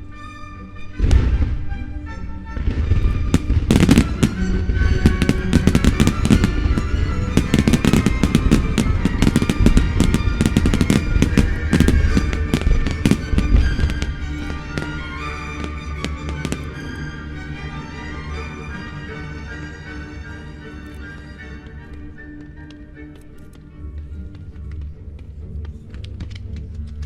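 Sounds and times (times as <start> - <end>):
music: 0.0 - 27.0
fireworks bangs and crackles: 1.0 - 1.8, 2.5 - 17.8.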